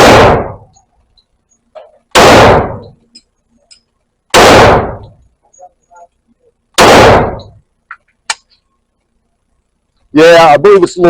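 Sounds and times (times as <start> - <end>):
pistol shots ringing indoors: 0.0 - 0.7, 2.1 - 3.0, 4.3 - 5.2, 6.8 - 7.6.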